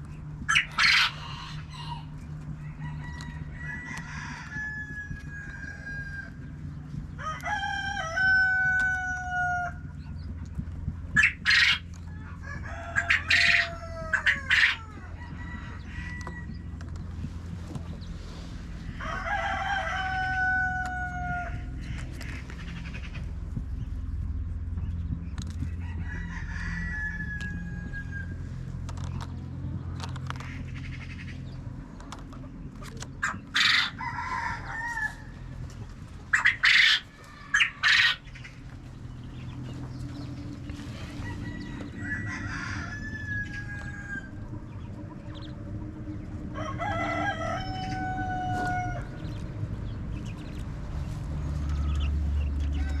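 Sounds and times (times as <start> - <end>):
chickens clucking: 0.0 - 53.0
roosters crowing: 0.0 - 53.0
steady low hum: 0.0 - 53.0
loud close squawking: 36.3 - 38.5.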